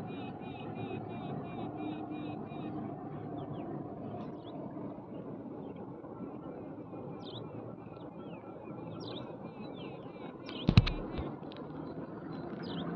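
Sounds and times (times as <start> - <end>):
small birds chirping: 7.2 - 12.9
low background rumble: 10.5 - 11.4
sharp knock: 10.6 - 11.3.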